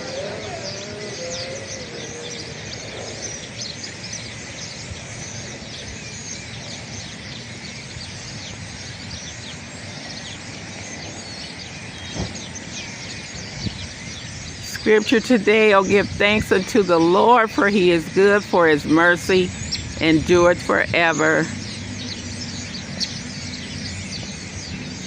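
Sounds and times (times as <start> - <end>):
flock of birds chirping: 0.0 - 25.0.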